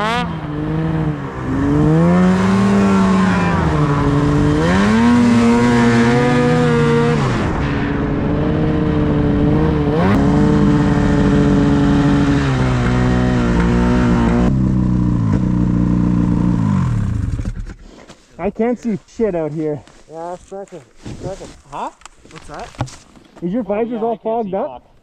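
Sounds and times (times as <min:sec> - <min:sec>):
snowmobile engine: 0:00.0 - 0:17.8.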